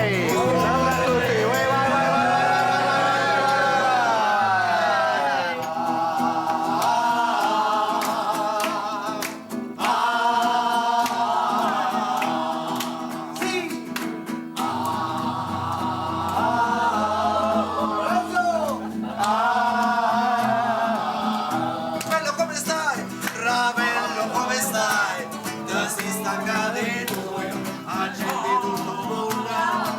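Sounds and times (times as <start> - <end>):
instrumental accompaniment: 0.0 - 4.9
voices singing long notes: 0.0 - 9.2, 14.6 - 22.1.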